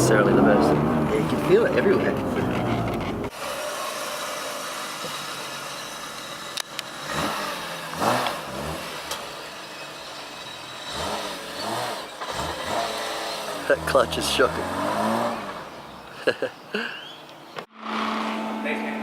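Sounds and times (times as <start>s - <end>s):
car engine accelerating: 0.0s - 3.5s, 4.2s - 15.9s.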